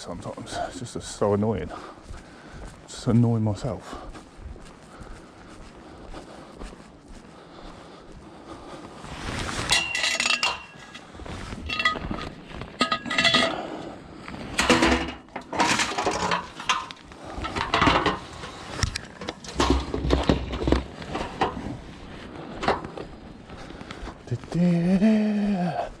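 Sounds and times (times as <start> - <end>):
scrap metal clanking: 9.6 - 11.0, 11.6 - 13.9, 14.5 - 21.8.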